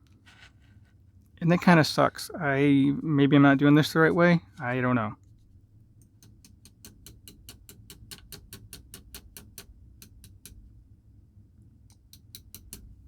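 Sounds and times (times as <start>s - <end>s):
small tool clicks on metal: 6.0s - 10.6s, 11.9s - 13.0s.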